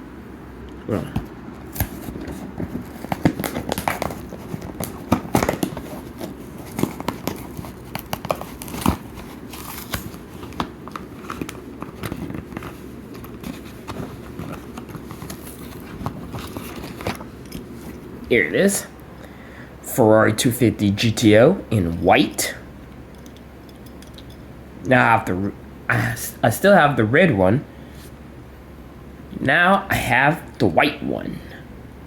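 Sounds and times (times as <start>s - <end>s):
plastic packaging crinkling and tearing: 1.8s - 18.0s.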